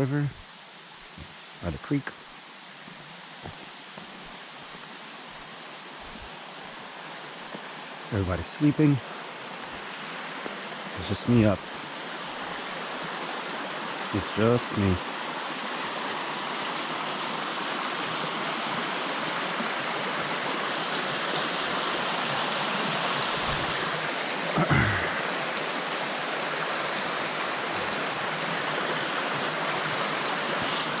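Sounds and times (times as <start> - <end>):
creek water running: 0.0 - 31.0.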